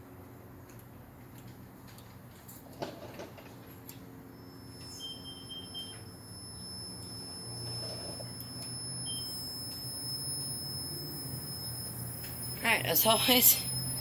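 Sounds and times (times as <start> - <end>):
compressor low hum: 3.8 - 14.0
faint high whine: 4.2 - 14.0
high beeps: 4.5 - 14.0.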